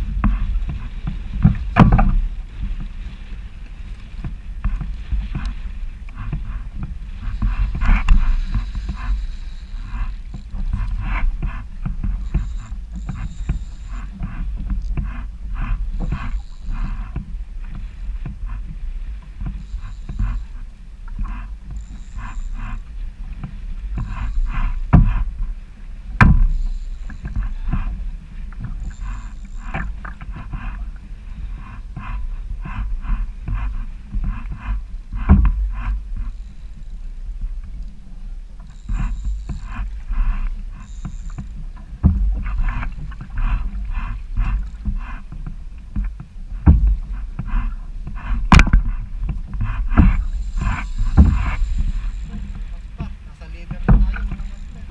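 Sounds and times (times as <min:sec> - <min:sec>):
water slapping hull: 0:00.0 - 0:54.9
wind buffeting microphone: 0:00.0 - 0:54.9.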